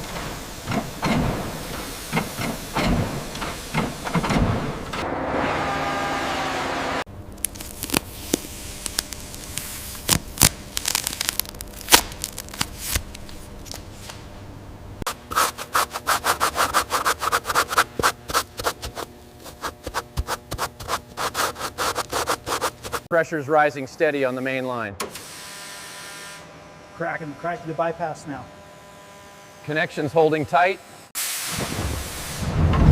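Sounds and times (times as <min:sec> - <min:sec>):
hand scraping and rubbing strokes: 0:15.1 - 0:23.1
loud hiss: 0:31.2 - 0:32.9.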